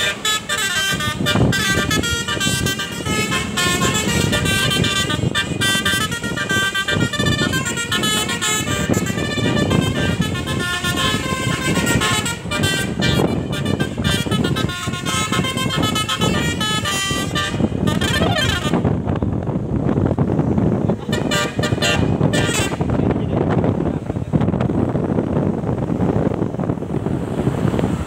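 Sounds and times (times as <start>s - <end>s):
bus horn playing melody: 0.0s - 19.1s, 21.0s - 23.0s
bus running noise: 0.0s - 28.0s
road and wind rumble: 0.0s - 28.0s.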